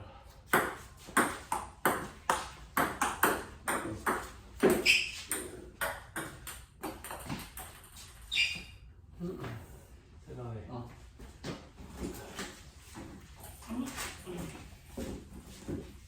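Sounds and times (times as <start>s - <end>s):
table tennis ball hits: 0.5s - 8.6s.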